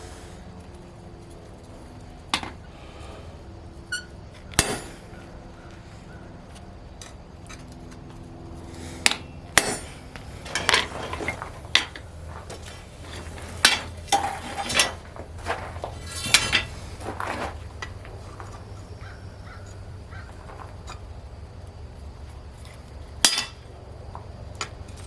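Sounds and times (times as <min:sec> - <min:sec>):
hammer striking steel on anvil: 0:04.6 - 0:05.1, 0:09.0 - 0:10.8, 0:23.2 - 0:23.6.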